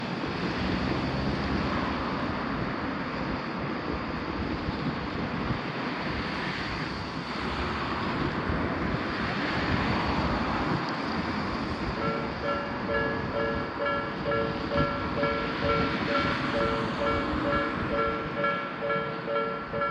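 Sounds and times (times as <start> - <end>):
wind buffeting microphone: 0.0 - 19.9
railroad crossing bell ringing: 11.9 - 19.9.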